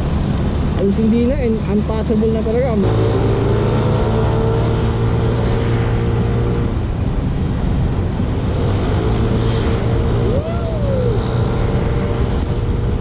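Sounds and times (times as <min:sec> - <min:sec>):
wind noise on microphone: 0:02.8 - 0:13.0.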